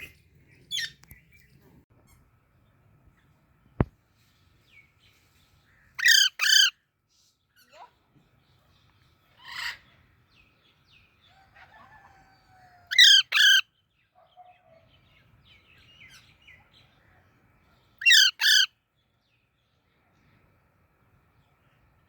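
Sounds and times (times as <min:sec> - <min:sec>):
parrot squawking calls: 0:06.0 - 0:06.7, 0:09.4 - 0:09.9, 0:12.9 - 0:13.6, 0:18.0 - 0:18.7.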